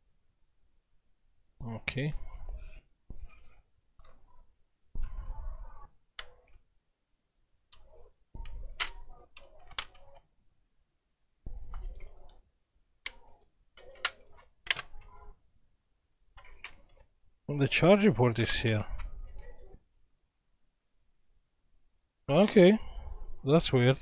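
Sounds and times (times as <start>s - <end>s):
laptop parts clicking: 7.7s - 10.3s, 13.0s - 15.3s.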